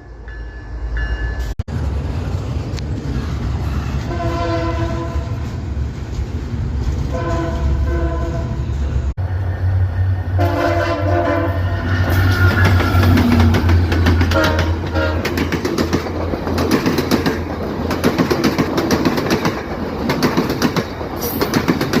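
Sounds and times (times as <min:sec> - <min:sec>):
train horn blasts: 0:04.1 - 0:05.4, 0:07.1 - 0:08.6, 0:10.2 - 0:13.2, 0:14.2 - 0:15.4
train wheels clattering on rails: 0:11.8 - 0:22.0.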